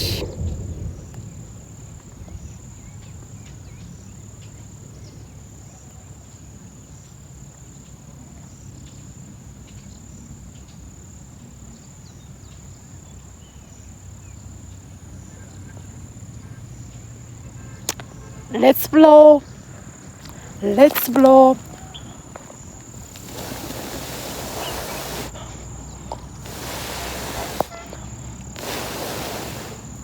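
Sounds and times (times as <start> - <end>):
insect trilling: 0.0 - 0.3, 20.3 - 25.4, 26.4 - 28.6
low wind rumble: 0.0 - 4.4, 21.5 - 30.0.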